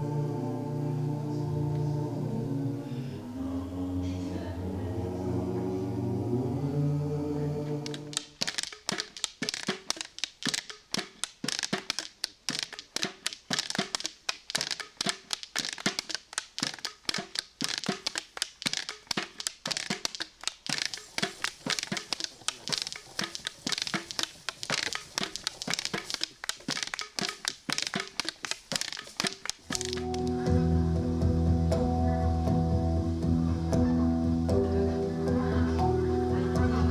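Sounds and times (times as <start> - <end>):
crunching crinkling clicks: 7.9 - 30.3.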